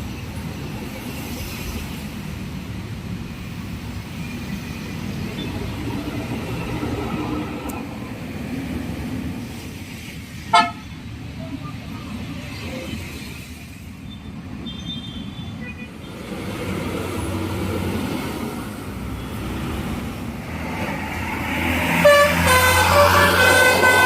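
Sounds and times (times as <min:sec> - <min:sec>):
bus diesel engine approaching: 0:00.0 - 0:14.6, 0:15.9 - 0:24.0
multi-note bus horn melody: 0:10.5 - 0:10.9, 0:21.8 - 0:24.0.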